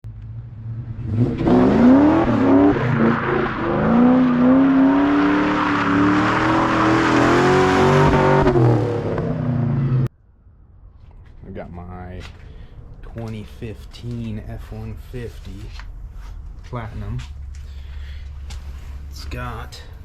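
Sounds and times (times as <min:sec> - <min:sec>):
car engine revving: 0:00.1 - 0:10.1.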